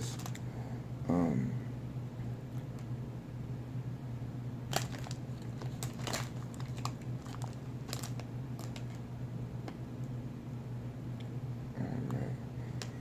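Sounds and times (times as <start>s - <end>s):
candy packaging crinkling: 0.0s - 0.4s, 4.7s - 9.1s
steady low hum: 0.0s - 13.0s.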